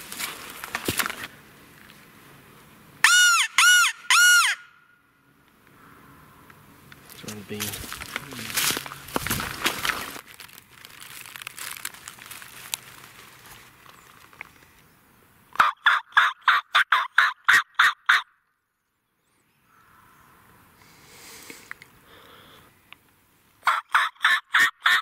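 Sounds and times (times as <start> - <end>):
turkey yelping: 3.0 - 4.8, 15.6 - 18.3, 23.6 - 25.0.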